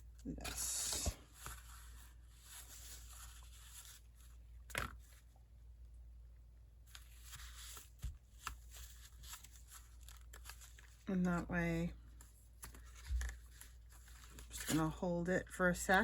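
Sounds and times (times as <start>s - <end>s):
paper crackle: 0.4s - 5.2s, 6.8s - 11.1s, 12.0s - 15.0s
paper rustling and tapping: 6.9s - 11.0s.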